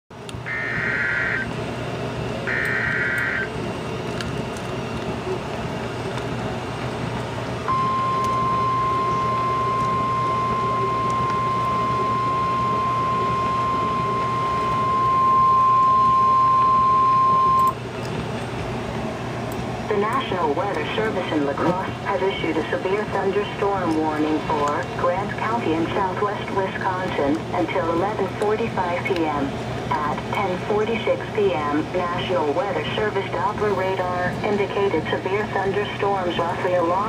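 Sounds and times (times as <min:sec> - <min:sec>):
steady warning alarm tone: 0:00.4 - 0:01.6, 0:02.4 - 0:03.6, 0:07.6 - 0:17.8
screechy data tones: 0:00.5 - 0:01.5, 0:02.5 - 0:03.5.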